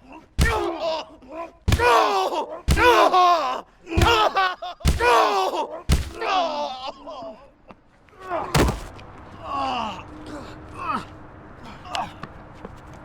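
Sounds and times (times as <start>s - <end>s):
thuds of punches landing: 0.4s - 0.7s, 1.7s - 3.2s, 4.0s - 6.2s, 8.5s - 8.9s
man grunting: 0.4s - 0.8s, 1.7s - 3.2s, 4.0s - 6.2s.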